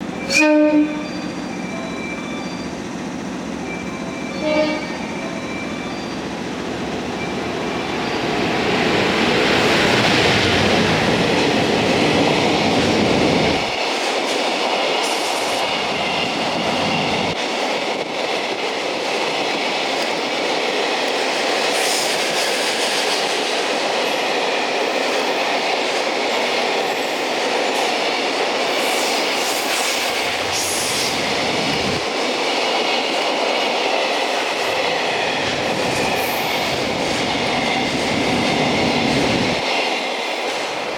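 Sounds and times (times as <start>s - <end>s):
freight train rumbling past: 0.0s - 40.9s
train horn toot: 0.2s - 1.3s, 4.2s - 5.3s
high wheel squeals: 0.2s - 2.8s.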